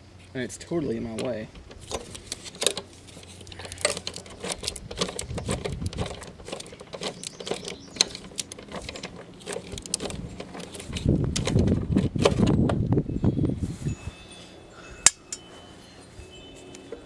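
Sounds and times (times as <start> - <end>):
hand tool clinking against metal: 15.0 - 15.5.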